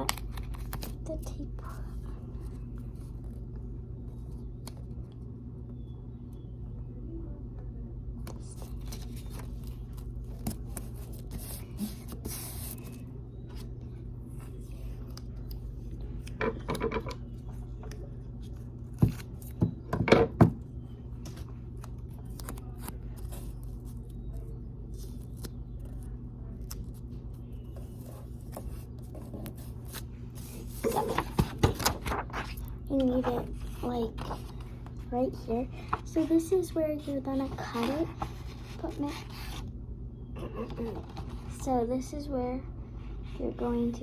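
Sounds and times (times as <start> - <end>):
steady low hum: 0.0 - 44.0
paper rustling: 8.3 - 13.7, 27.7 - 39.7.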